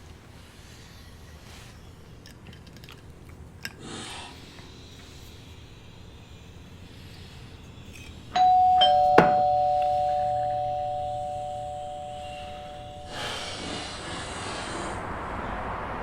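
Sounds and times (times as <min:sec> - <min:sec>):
two-tone doorbell chime: 0:08.4 - 0:14.0.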